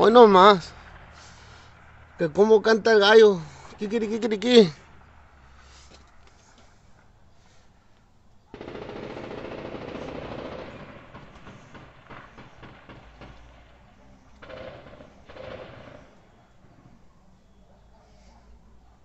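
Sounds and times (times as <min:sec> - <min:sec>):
automatic gunfire: 0:08.5 - 0:16.5.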